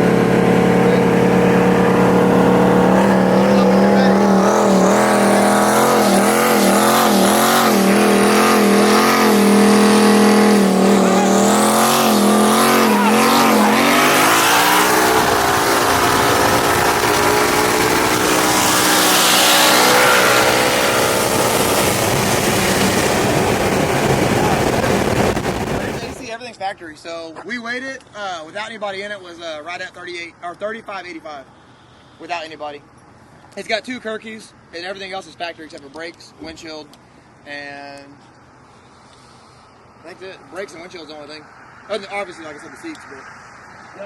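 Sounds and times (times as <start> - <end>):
car engines accelerating: 0.0 - 26.2, 38.4 - 44.0
wind and road noise: 0.0 - 26.3, 35.7 - 44.0.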